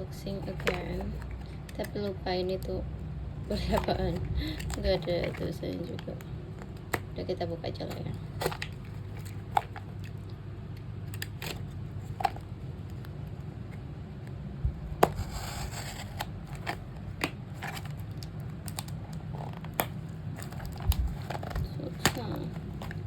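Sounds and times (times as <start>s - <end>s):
package clicks and scratches: 0.2s - 2.0s, 3.6s - 7.1s, 7.9s - 10.3s, 11.0s - 13.8s, 14.9s - 23.0s
packaging rustle: 3.5s - 7.1s, 7.9s - 10.3s, 11.0s - 13.1s, 15.0s - 23.0s.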